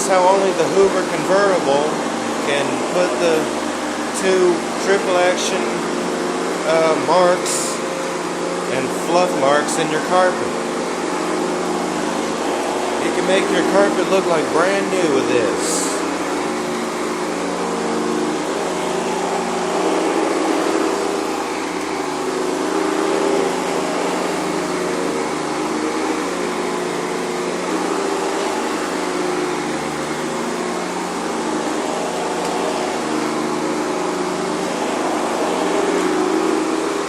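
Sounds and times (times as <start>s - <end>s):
vacuum cleaner on carpet: 0.0s - 37.0s.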